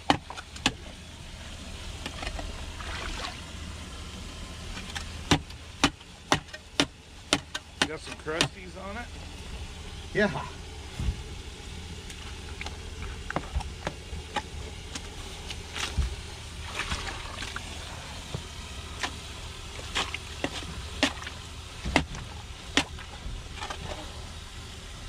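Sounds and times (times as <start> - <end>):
engine idling: 0.0 - 25.0.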